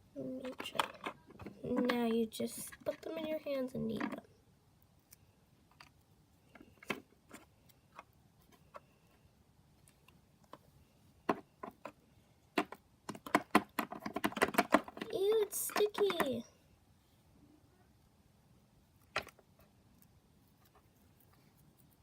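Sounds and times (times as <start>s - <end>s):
plastic toy figurines clicking: 12.6s - 16.4s.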